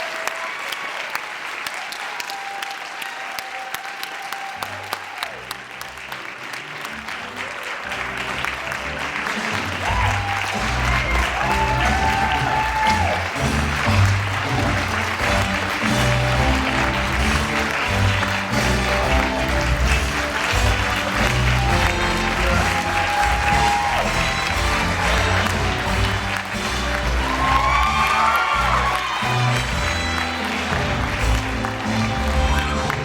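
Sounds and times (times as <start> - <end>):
audience applauding: 0.0 - 33.0
curtain-call music with bass line: 8.0 - 33.0.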